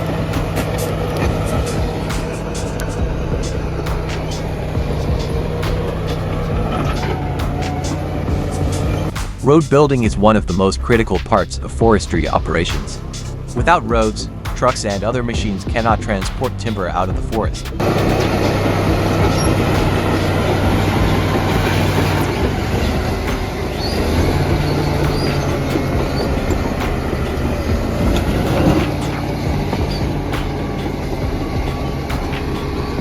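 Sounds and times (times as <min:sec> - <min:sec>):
diesel engine under load: 0:00.0 - 0:09.7, 0:17.8 - 0:33.0
steel tracks clanking and squealing: 0:00.0 - 0:09.7, 0:12.1 - 0:33.0.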